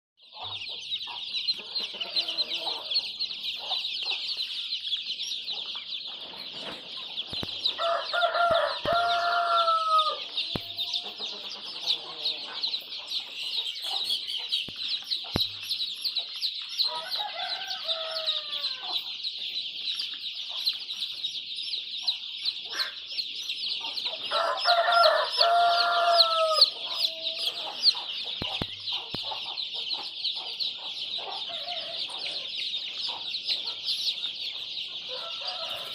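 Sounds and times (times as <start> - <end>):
high-pitched chatter of chickens: 0.2 - 35.9
roosters crowing: 1.6 - 4.3, 6.6 - 13.0, 16.8 - 19.1, 24.1 - 28.8, 31.1 - 33.9, 35.0 - 35.9.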